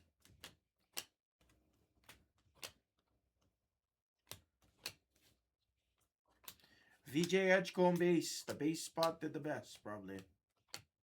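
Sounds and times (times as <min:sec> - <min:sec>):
trading cards clicking: 0:07.2 - 0:09.4.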